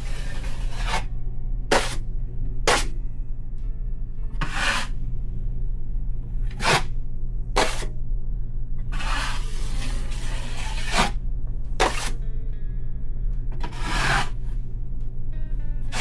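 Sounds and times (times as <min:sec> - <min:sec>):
drywall knife scraping compound: 0:00.0 - 0:01.1, 0:01.7 - 0:02.0, 0:02.7 - 0:02.9, 0:04.4 - 0:05.0, 0:06.5 - 0:06.9, 0:07.6 - 0:07.9, 0:09.0 - 0:11.2, 0:11.8 - 0:12.2, 0:13.6 - 0:14.4
steady low hum: 0:00.0 - 0:16.0.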